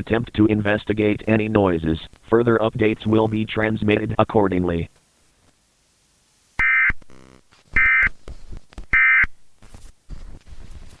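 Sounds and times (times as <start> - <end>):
digital data tone bursts: 6.6 - 8.1.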